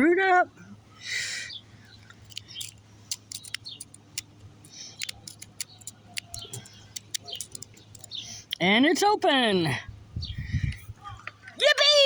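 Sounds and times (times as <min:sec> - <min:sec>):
lock pick clicking in padlock: 0:02.2 - 0:04.4, 0:05.0 - 0:08.2.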